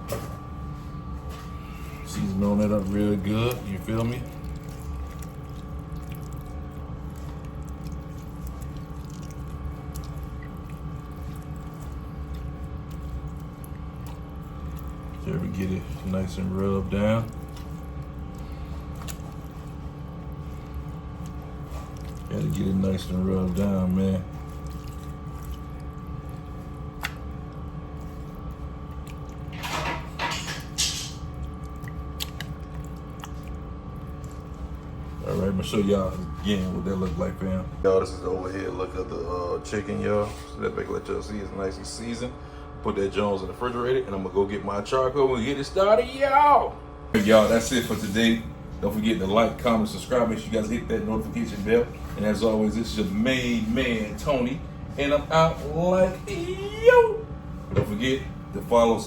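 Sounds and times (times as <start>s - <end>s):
background hum: 0.0s - 59.0s
hands squishing raw chicken: 1.3s - 36.5s.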